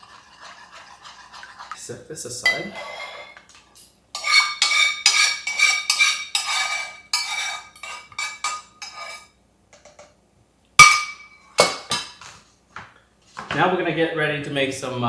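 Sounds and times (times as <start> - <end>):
metal utensil scraping a bowl: 0.0 - 3.5, 4.1 - 10.0.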